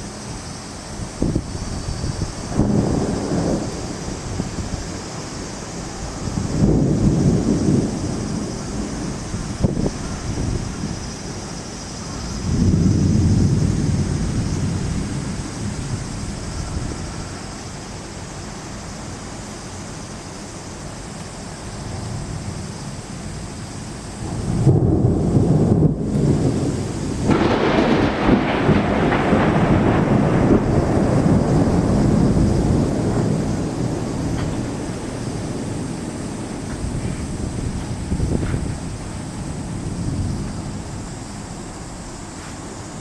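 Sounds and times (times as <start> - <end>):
thunder rumble: 0.0 - 19.3, 21.8 - 43.0
heavy rain: 0.0 - 43.0.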